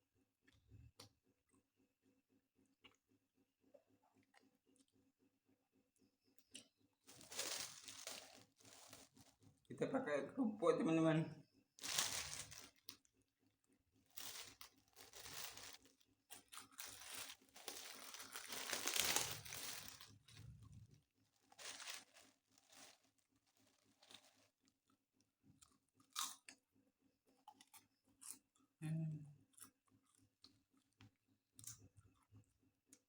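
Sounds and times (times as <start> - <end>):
person crunching crackers: 7.1 - 9.4, 11.8 - 13.1, 14.1 - 25.0, 25.6 - 26.6.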